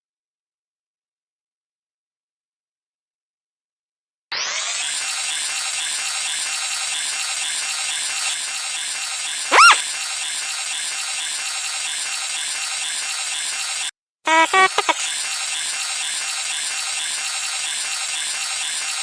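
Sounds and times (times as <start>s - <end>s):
rattling motor whirr: 4.4s - 13.9s, 14.5s - 19.0s
swooping electronic chirp: 9.5s - 9.8s.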